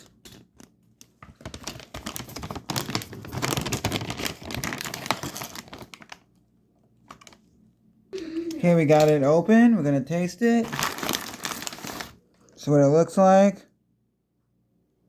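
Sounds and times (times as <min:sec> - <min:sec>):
plastic snack bag crinkling: 0:00.0 - 0:06.3, 0:07.0 - 0:07.5, 0:08.5 - 0:09.3, 0:10.2 - 0:12.3.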